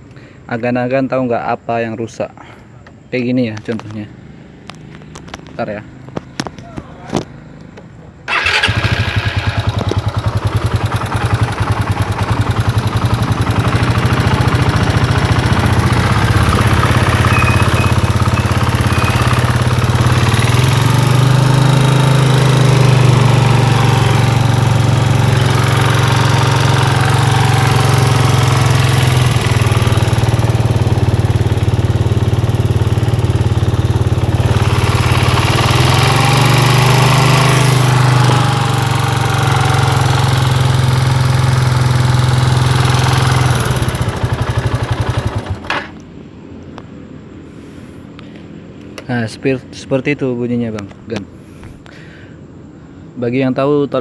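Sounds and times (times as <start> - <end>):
motorcycle engine starting and idling: 3.6 - 46.2.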